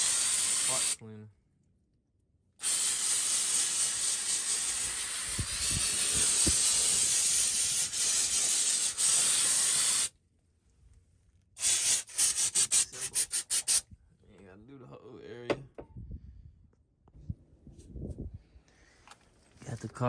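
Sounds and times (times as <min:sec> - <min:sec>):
aerosol can spraying: 0:00.0 - 0:01.0, 0:02.6 - 0:10.1, 0:11.6 - 0:13.8
short hissing sprays: 0:00.0 - 0:01.0, 0:02.6 - 0:10.1, 0:11.6 - 0:13.8.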